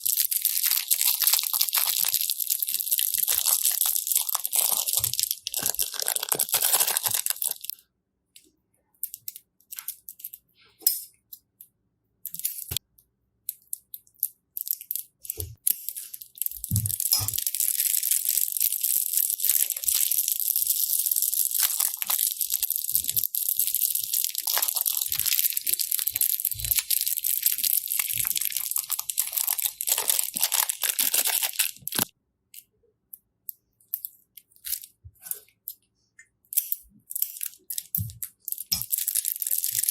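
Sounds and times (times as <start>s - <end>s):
slime crackling: 0.0s - 7.7s, 13.8s - 32.1s.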